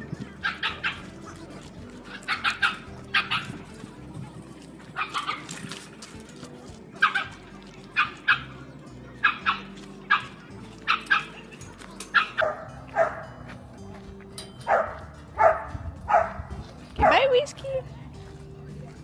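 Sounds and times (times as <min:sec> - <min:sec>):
dog barking: 0:00.4 - 0:01.0, 0:02.3 - 0:03.6, 0:05.0 - 0:05.5, 0:07.0 - 0:07.3, 0:09.2 - 0:11.4, 0:12.2 - 0:13.3, 0:14.7 - 0:17.4.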